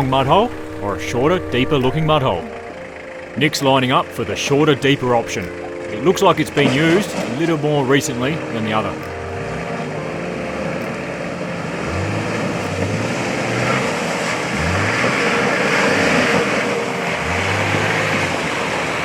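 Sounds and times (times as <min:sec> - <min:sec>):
wheels spinning through mud: 0:00.0 - 0:19.0
engine revving hard: 0:06.2 - 0:19.0.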